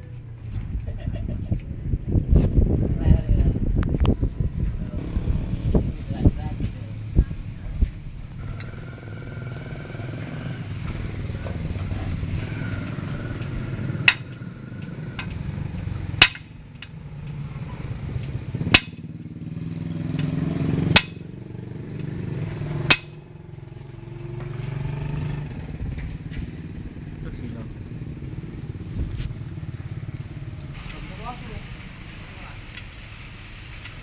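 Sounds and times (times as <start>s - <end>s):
low motor hum: 0.0s - 34.0s
sharp knocks on metal: 14.0s - 14.4s, 16.2s - 17.0s, 18.7s - 19.1s, 20.1s - 21.4s, 22.9s - 23.2s.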